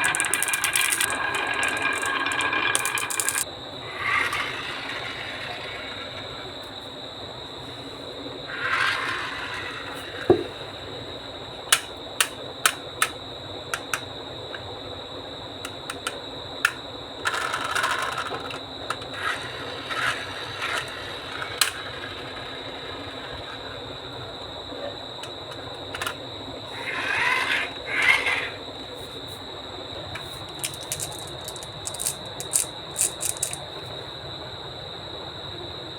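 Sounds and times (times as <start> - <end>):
marbles clicking on wooden pieces: 0.0 - 3.4, 30.2 - 33.7
marbles rolling rumble: 0.0 - 6.4, 26.7 - 28.6, 30.2 - 33.7.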